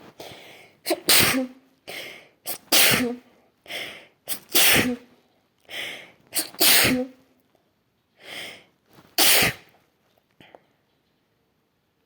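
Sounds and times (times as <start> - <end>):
person sneezing: 0.8 - 3.3, 4.3 - 5.1, 6.4 - 7.2, 9.2 - 9.7.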